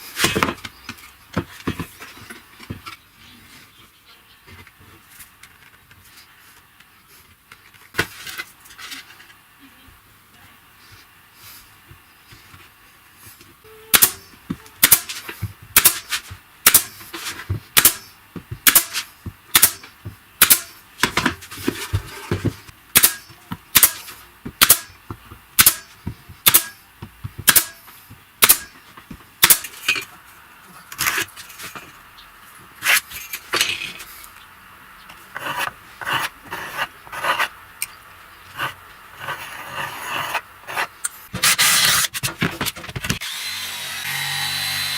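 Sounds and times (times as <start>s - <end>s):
rubbing or scraping: 21.4s - 22.7s.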